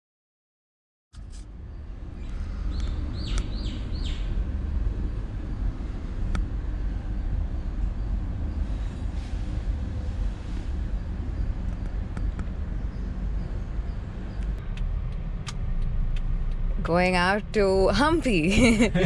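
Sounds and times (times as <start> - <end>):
motorcycle rumble: 1.2 - 19.0.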